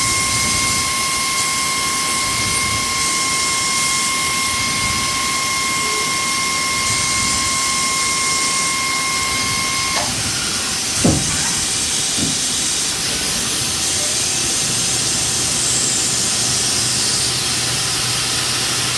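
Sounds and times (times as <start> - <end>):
high machine whine: 0.0 - 18.9
machine hiss: 0.0 - 18.9
knock: 11.0 - 11.6, 12.2 - 12.5.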